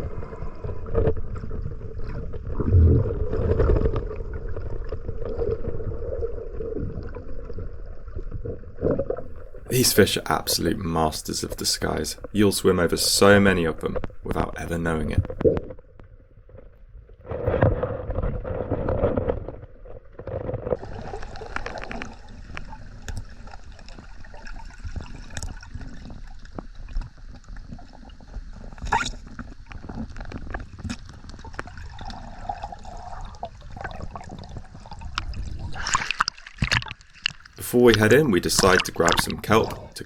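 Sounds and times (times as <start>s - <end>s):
water gurgling underwater: 0.0s - 9.8s, 17.2s - 26.4s, 27.7s - 40.0s
clicks and crackles: 34.9s - 40.0s.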